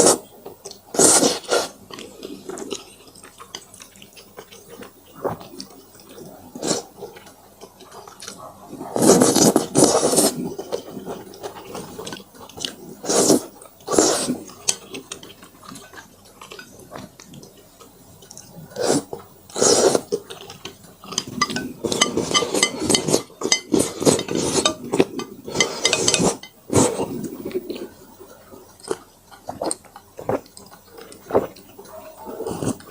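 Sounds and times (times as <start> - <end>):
chewing: 0.4 - 32.9
loud noodle slurps: 0.9 - 1.8, 9.0 - 10.5, 13.0 - 14.4, 18.7 - 20.2, 21.8 - 27.4
utensils clicking against dish: 21.1 - 26.5.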